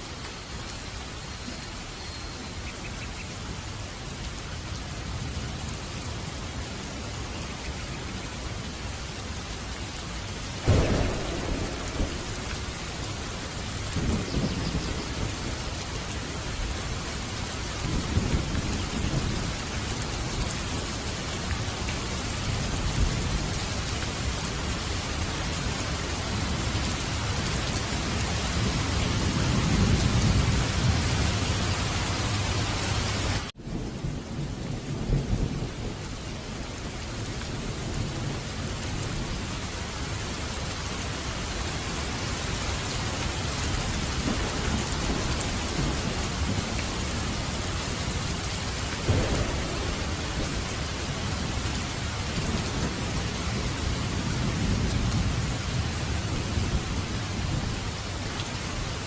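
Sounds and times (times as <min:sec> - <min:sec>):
steady rain: 0:00.0 - 0:59.0
thunderclap: 0:10.6 - 0:15.6, 0:48.9 - 0:57.8
rolling thunder: 0:10.6 - 0:24.8, 0:43.6 - 0:58.1.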